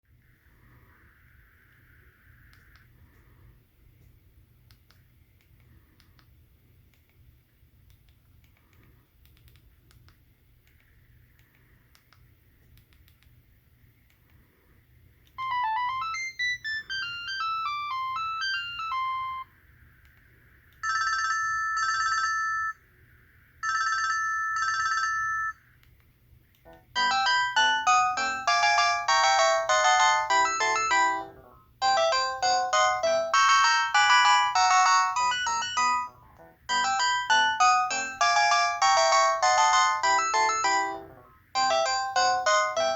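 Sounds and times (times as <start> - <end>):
fast electronic ringtone melody: 15.4 - 19.5, 27.0 - 42.9
trilled phone rings: 20.8 - 22.8, 23.6 - 25.6, 27.0 - 41.0, 41.6 - 42.9.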